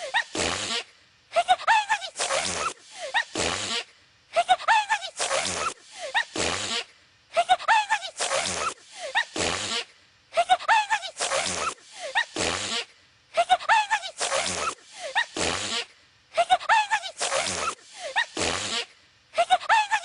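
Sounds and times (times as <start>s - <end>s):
squeaky cartoon sneeze: 0.0s - 20.0s.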